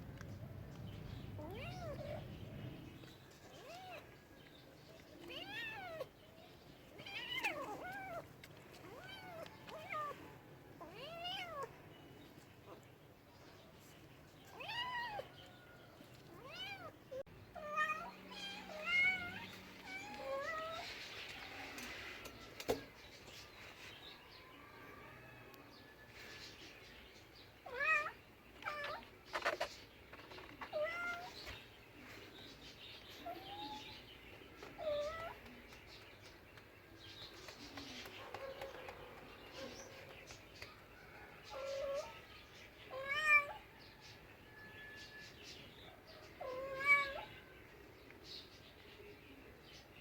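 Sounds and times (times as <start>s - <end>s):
cat meowing: 1.4s - 2.2s, 10.8s - 11.7s, 14.5s - 15.4s, 16.4s - 20.8s, 42.9s - 43.6s, 46.4s - 47.3s.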